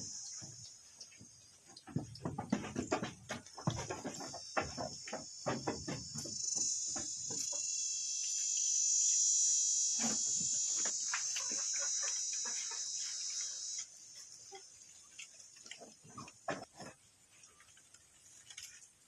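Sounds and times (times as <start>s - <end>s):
insect buzzing trill: 4.0s - 14.8s.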